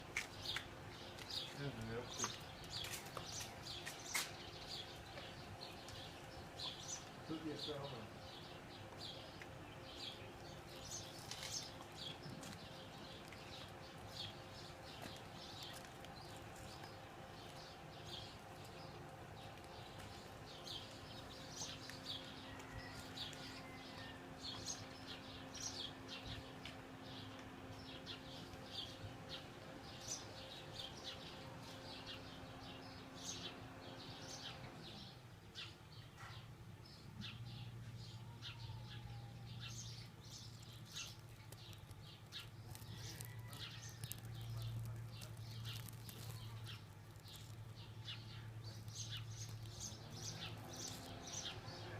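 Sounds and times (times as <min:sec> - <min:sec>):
faint steady hum: 0:00.0 - 0:50.2
small birds chirping: 0:00.1 - 0:51.9.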